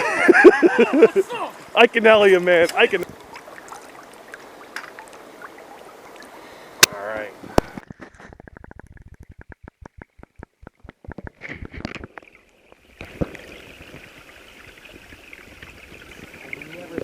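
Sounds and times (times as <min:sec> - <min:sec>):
river water rushing: 0:01.0 - 0:07.4.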